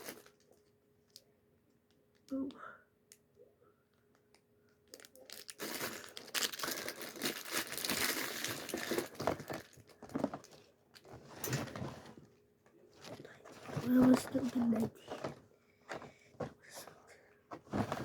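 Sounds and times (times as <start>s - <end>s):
packaging crinkling and tearing: 0.0s - 0.5s, 4.8s - 10.7s.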